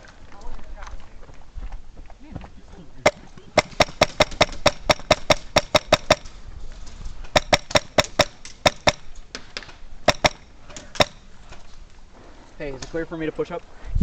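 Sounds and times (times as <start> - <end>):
airsoft gun shots: 3.1 - 6.3, 7.3 - 11.3.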